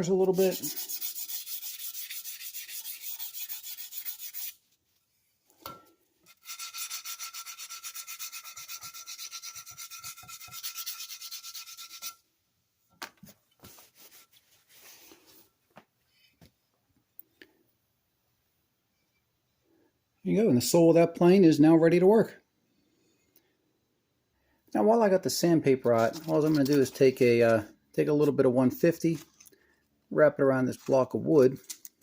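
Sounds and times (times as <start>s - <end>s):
sandpaper rubbing on metal: 0.0s - 4.6s, 6.3s - 12.2s.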